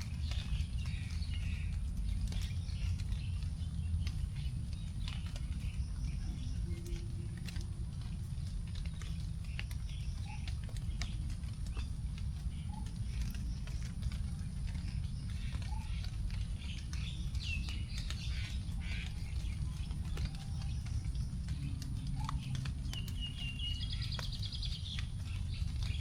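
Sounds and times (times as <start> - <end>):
birds chirping: 0.0 - 26.0
raindrops dripping onto leaves: 0.0 - 26.0
steady low rumble: 0.0 - 26.0.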